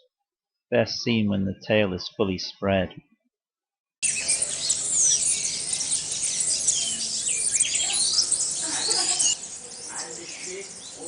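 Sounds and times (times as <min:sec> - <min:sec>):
small birds chirping: 0:04.0 - 0:11.0.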